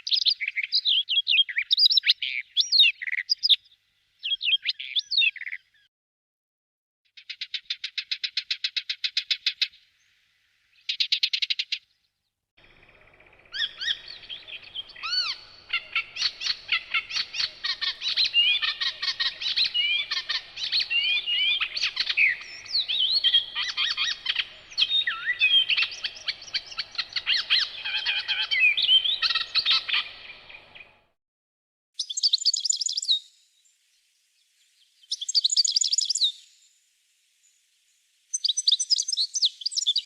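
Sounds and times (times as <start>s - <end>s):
songbirds singing: 0.0s - 5.9s, 7.2s - 31.2s, 32.0s - 36.7s, 37.4s - 40.0s
fast ticking bird trill: 12.7s - 30.2s.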